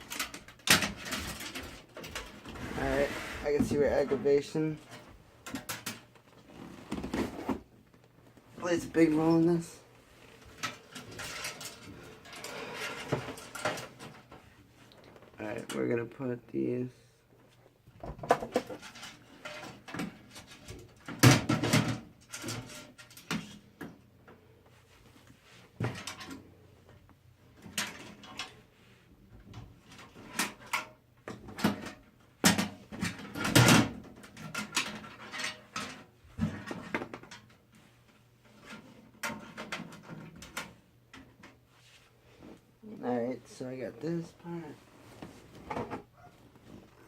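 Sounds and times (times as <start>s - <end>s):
computer case hardware knocking and rattling: 19.8s - 23.5s.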